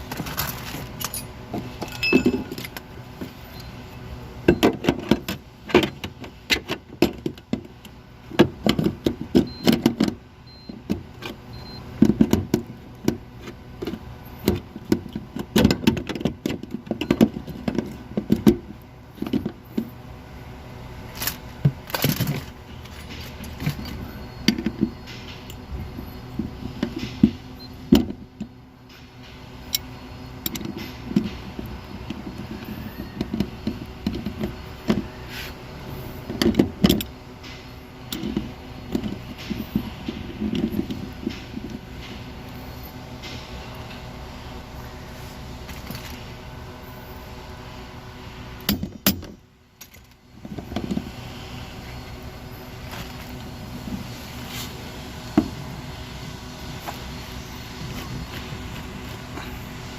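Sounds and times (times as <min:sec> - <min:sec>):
metal tools clinking and rattling: 0:00.0 - 0:02.9
steady low hum: 0:00.0 - 0:59.9.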